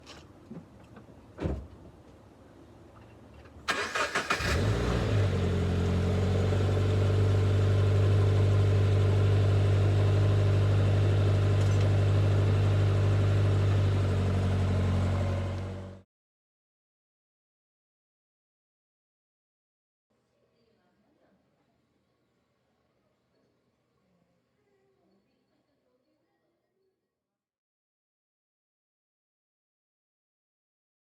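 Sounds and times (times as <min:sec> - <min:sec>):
engine starter cranking: 0:03.7 - 0:04.9
car engine idling: 0:03.7 - 0:16.0.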